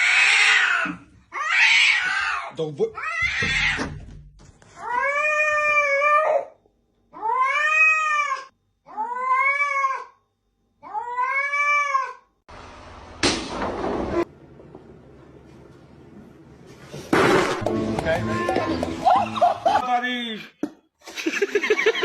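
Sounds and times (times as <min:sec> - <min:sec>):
cat yowling: 0:00.0 - 0:03.8, 0:04.8 - 0:06.6, 0:07.2 - 0:10.2, 0:10.8 - 0:12.3.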